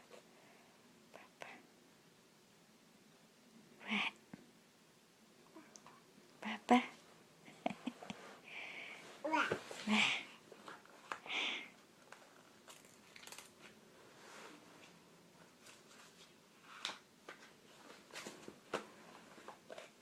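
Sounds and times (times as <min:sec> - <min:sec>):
faint clicks and rustles: 0:10.5 - 0:20.0.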